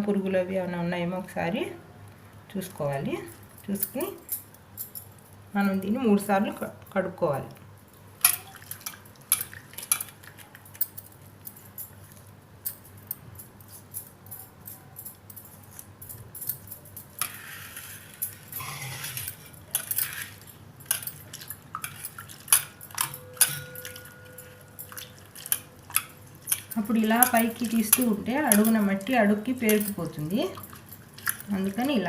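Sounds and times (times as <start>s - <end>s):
metal kitchen vessels clinking: 8.2s - 10.9s, 16.4s - 32.0s
brief ringing tone: 23.1s - 24.8s.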